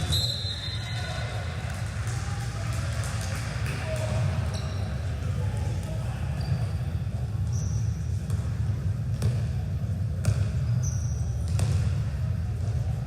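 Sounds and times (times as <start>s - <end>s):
low hum of large hall: 0.0s - 13.0s
sneaker squeaks on floor: 4.5s - 5.0s, 6.4s - 8.4s, 10.6s - 11.8s.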